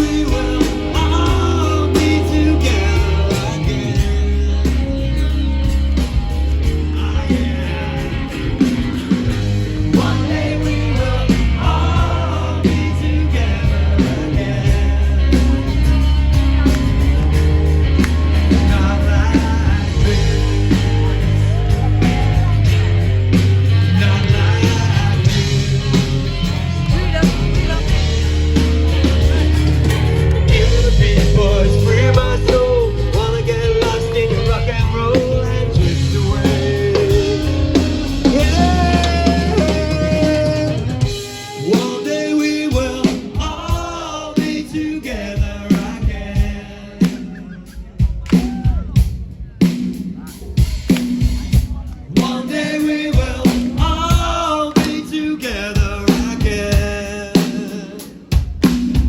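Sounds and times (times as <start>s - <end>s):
person singing: 0.0s - 5.1s, 17.9s - 23.1s, 23.7s - 49.0s, 52.0s - 58.5s
live rock band playing: 0.0s - 59.0s.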